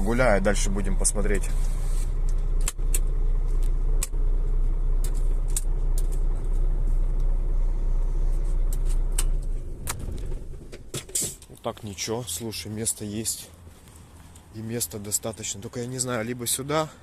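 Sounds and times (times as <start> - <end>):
diesel truck engine idling: 0.0 - 11.0.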